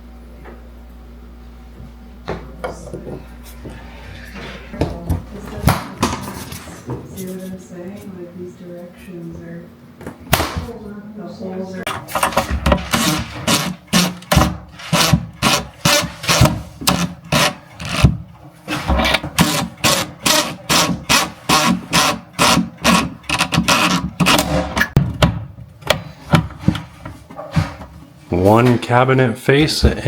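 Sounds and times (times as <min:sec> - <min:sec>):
hand tool rasping: 0:12.0 - 0:18.1, 0:18.7 - 0:24.6.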